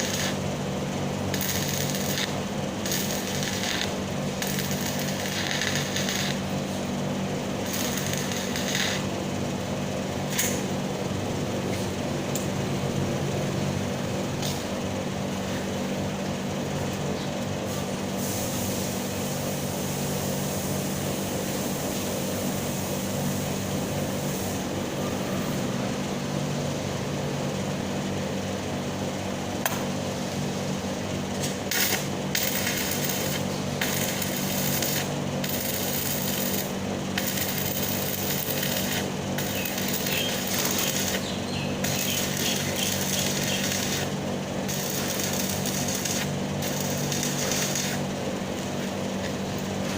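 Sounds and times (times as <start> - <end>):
welding arc crackling and sizzling: 0.0 - 10.8, 31.0 - 49.9
steady low hum: 0.0 - 49.9.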